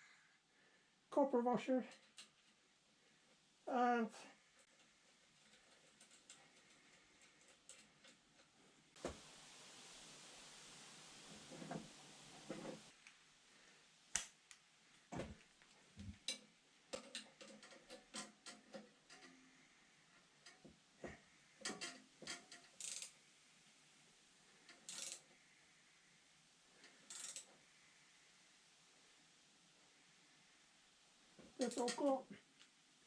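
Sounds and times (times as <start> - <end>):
metal hand tools clicking: 21.7 - 23.1, 24.8 - 25.2, 27.1 - 27.5.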